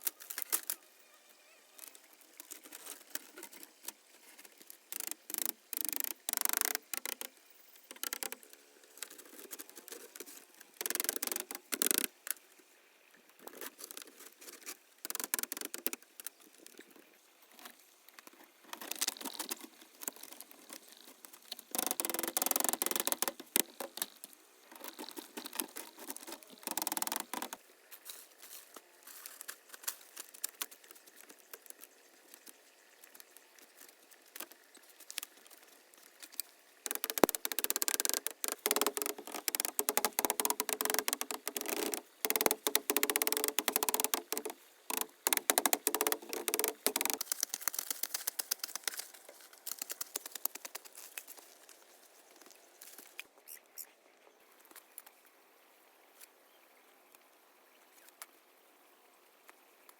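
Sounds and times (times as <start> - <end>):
hands clicking and tapping materials: 9.0 - 12.4, 18.7 - 27.6, 29.3 - 35.6, 36.2 - 51.8
scraping and rustling: 18.7 - 53.2.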